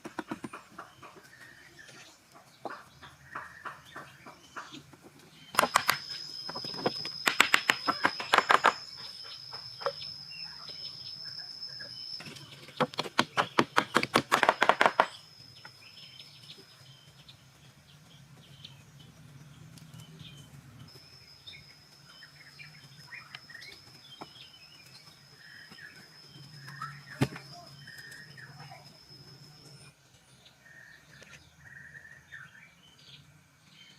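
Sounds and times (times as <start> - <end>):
high-pitched insect drone: 5.6 - 12.8, 20.8 - 30.0
rapid sharp taps: 12.9 - 15.1.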